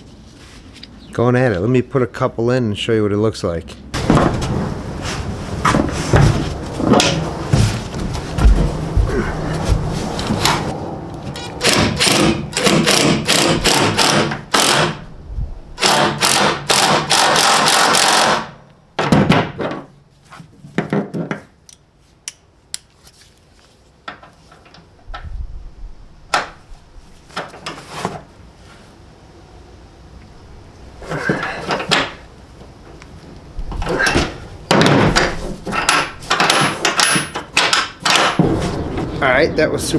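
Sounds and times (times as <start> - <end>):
continuous power tool noise: 11.3 - 15.0, 15.8 - 18.6
power tool bursts: 11.6 - 15.0, 15.8 - 18.5
sharp clicks and knocks: 33.7 - 39.2.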